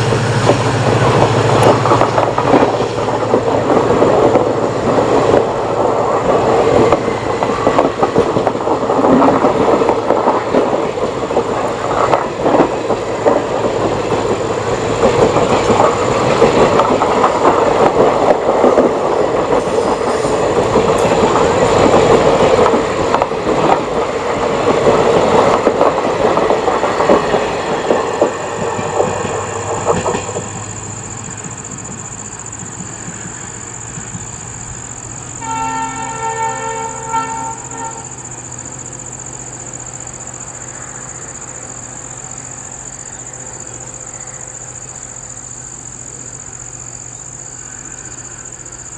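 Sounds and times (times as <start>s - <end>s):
clickety-clack over rail joints: 0.0s - 38.1s
train wheels rushing on rails: 0.0s - 48.9s.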